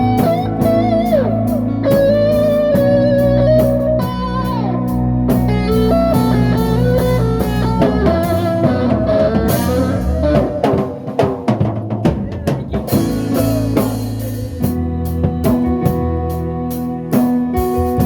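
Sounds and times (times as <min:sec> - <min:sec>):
drum fills: 0:00.0 - 0:18.0
live band music: 0:00.0 - 0:18.0.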